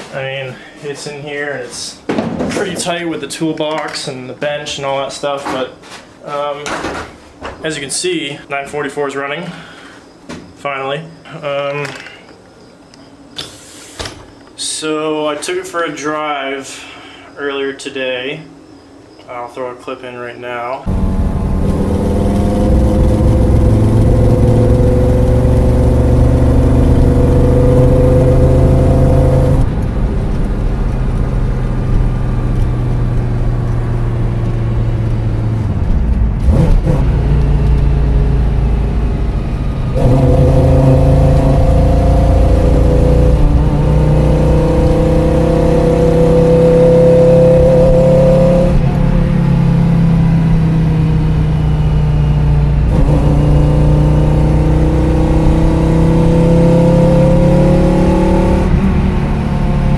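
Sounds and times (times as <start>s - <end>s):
car engine revving: 20.9s - 59.9s.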